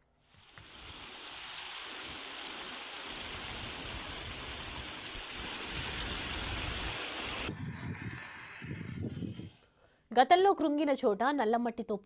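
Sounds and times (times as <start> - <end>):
rushing water: 0.3 - 7.5
wind rumble on microphone: 3.2 - 9.6.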